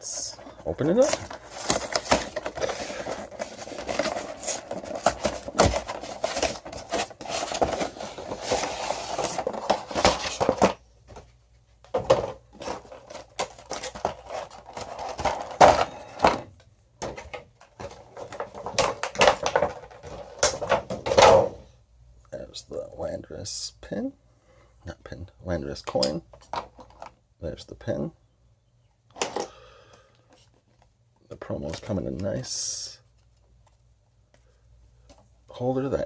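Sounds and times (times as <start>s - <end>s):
cardboard packaging rustling: 0.0s - 10.8s, 12.2s - 16.5s.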